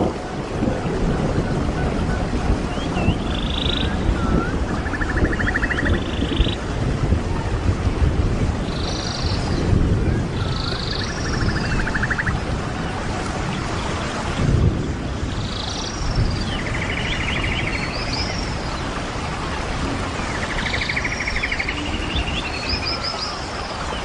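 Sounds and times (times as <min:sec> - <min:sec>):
running water: 0:00.0 - 0:24.0
small birds singing trills: 0:02.6 - 0:06.6, 0:08.6 - 0:12.4, 0:15.1 - 0:19.0, 0:20.1 - 0:24.0.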